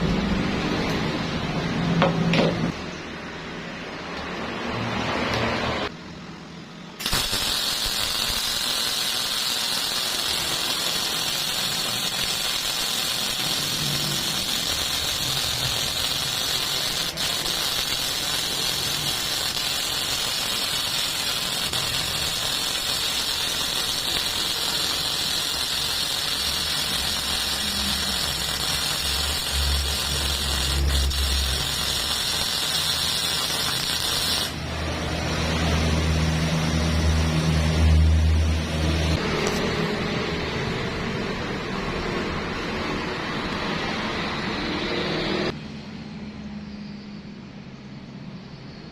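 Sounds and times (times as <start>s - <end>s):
welder arc hissing sizzle: 7.0s - 35.7s.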